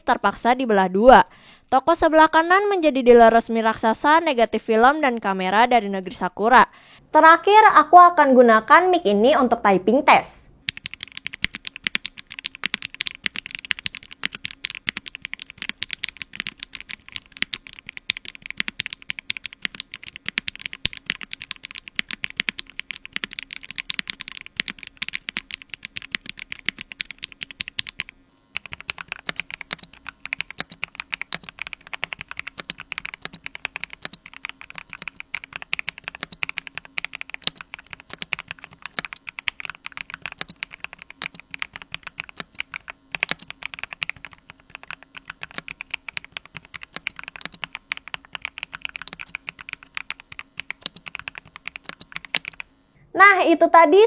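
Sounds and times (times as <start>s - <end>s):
typing on computer keyboard: 10.6s - 52.7s.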